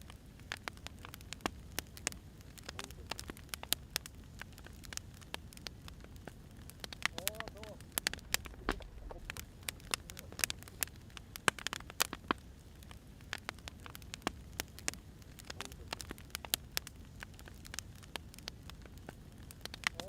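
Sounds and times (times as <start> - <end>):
fire pops and snaps: 0.0 - 20.0
low rumble of flames: 0.0 - 20.0.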